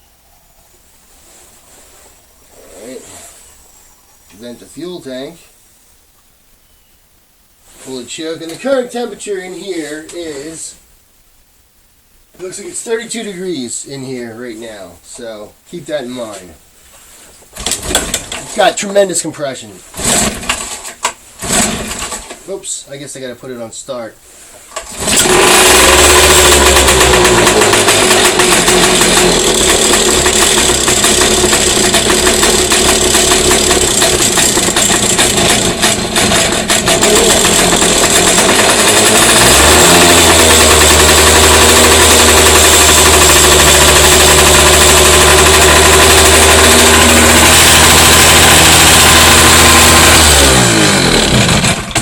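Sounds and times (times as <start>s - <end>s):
outboard motor running: 21.4s - 22.1s, 24.9s - 52.0s.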